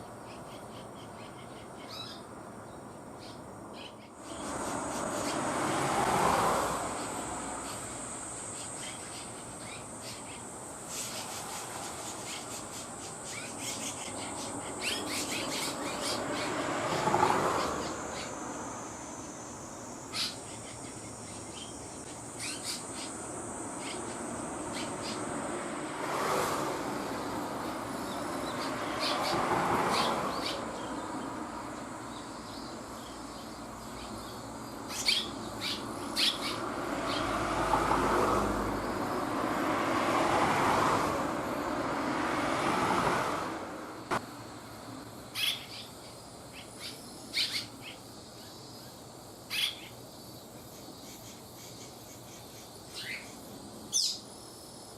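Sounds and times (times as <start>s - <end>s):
road traffic: 0.0s - 54.9s
swallows chirping: 7.0s - 18.6s, 20.0s - 25.3s, 27.2s - 31.4s, 32.1s - 37.3s, 45.4s - 54.3s.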